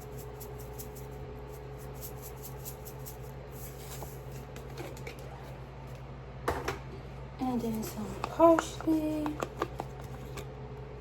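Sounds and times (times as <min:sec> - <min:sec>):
spice shaken into bowl: 0:00.0 - 0:04.5
steady low hum: 0:00.0 - 0:11.0.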